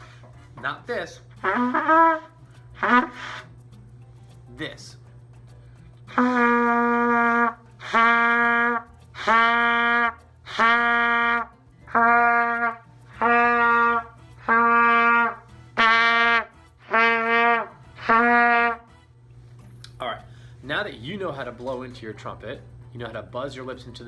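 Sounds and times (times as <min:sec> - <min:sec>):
trumpet low note: 0:01.3 - 0:03.6, 0:06.1 - 0:19.0.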